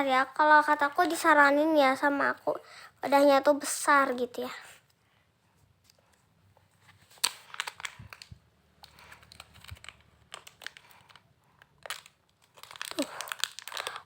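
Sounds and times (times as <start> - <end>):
plastic wrapper crinkling: 6.8 - 14.0.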